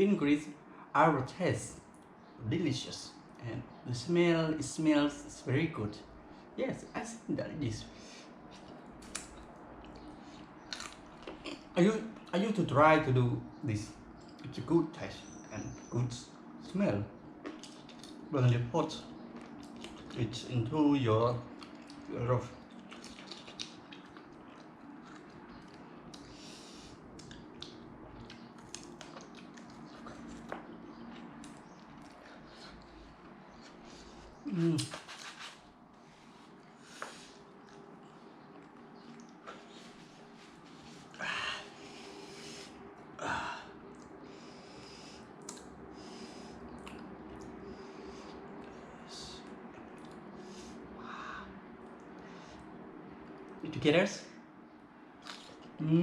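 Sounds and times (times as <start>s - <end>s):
steady low hum: 0.0s - 56.0s
person chewing food: 8.5s - 11.7s, 17.4s - 18.2s, 19.2s - 20.2s, 21.5s - 35.6s, 36.5s - 41.2s, 45.3s - 48.8s, 55.2s - 55.8s.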